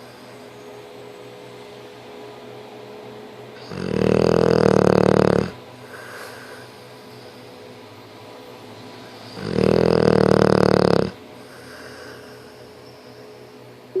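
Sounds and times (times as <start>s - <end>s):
loud rough snore: 3.6s - 5.6s, 9.3s - 11.2s.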